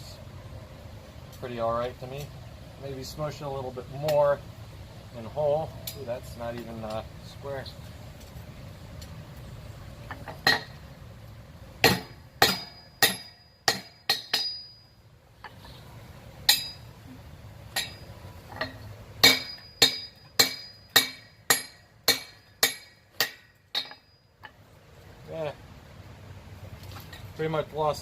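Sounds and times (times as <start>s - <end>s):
hammer ringing on anvil: 11.9s - 14.8s, 19.2s - 24.2s.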